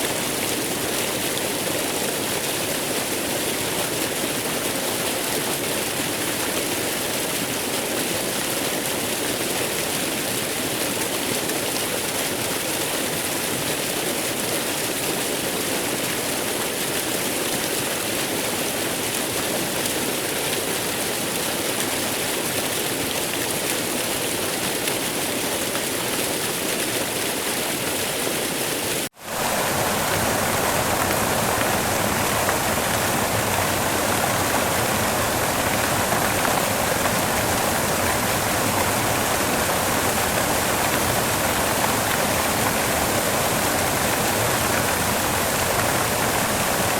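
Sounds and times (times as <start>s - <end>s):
waterfall rushing: 29.1s - 46.9s.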